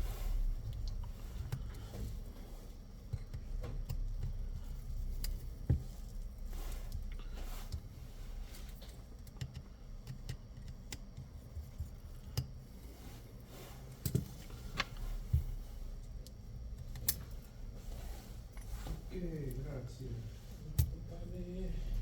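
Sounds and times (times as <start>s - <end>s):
low steady hum: 0.0s - 22.0s
small tools clicking and tapping: 3.1s - 6.2s, 8.7s - 12.6s, 16.2s - 17.4s.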